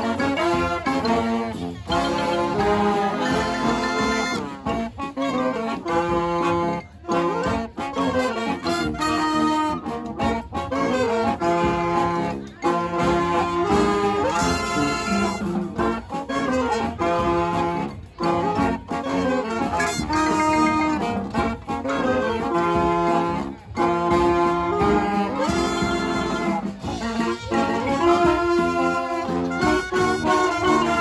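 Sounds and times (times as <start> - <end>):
horns playing lively tune: 0.0 - 31.0
steady drum beat: 22.6 - 31.0.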